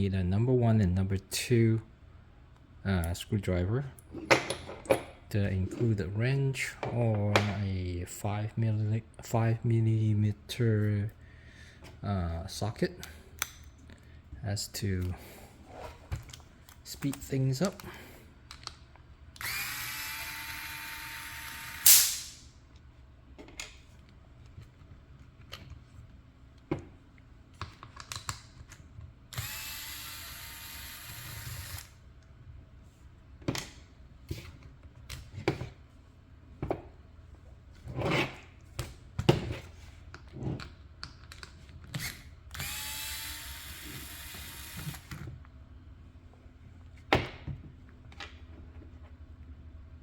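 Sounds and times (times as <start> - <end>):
electric screwdriver whirring: 19.4 - 22.1, 29.3 - 31.9, 42.5 - 45.1
clicks and taps of small parts: 27.6 - 28.8.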